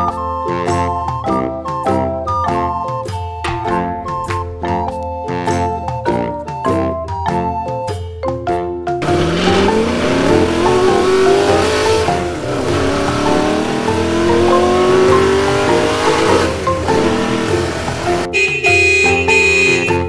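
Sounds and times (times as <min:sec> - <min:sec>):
racing car engine accelerating: 0:09.0 - 0:18.3.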